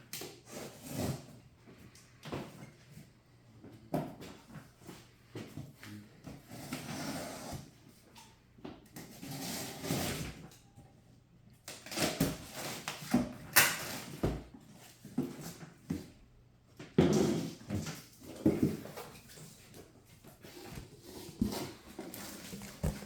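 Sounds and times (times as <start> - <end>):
cardboard box scraping and rustling: 20.4 - 23.0.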